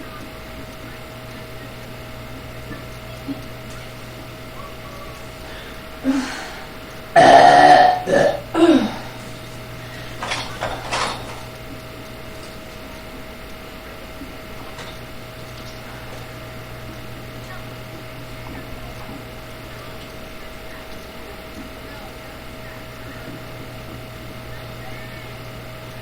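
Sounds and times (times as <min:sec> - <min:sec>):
man burping: 0:06.0 - 0:09.2.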